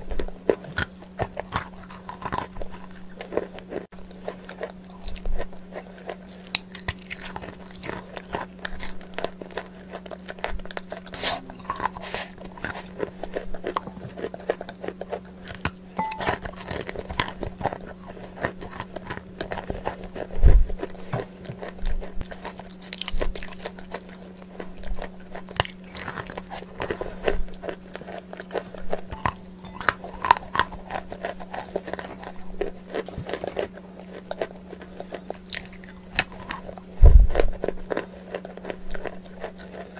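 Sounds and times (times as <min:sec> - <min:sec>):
crunchy eating: 0:00.0 - 0:39.9
low hum: 0:16.0 - 0:17.2, 0:28.8 - 0:31.8.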